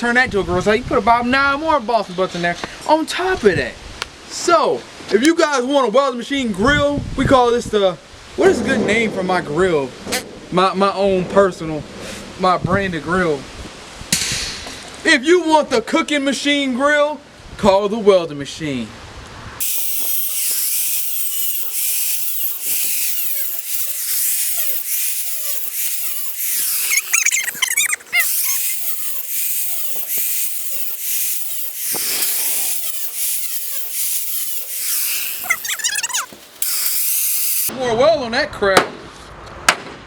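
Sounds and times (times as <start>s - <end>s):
angle grinder cutting steel: 19.6s - 37.7s.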